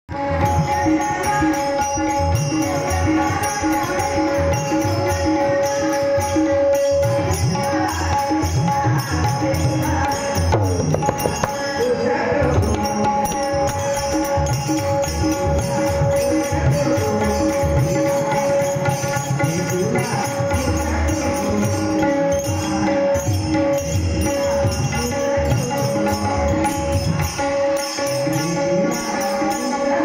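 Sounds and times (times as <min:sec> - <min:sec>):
jingling percussion: 0:00.1 - 0:30.0
tabla playing a steady rhythm: 0:00.1 - 0:30.0.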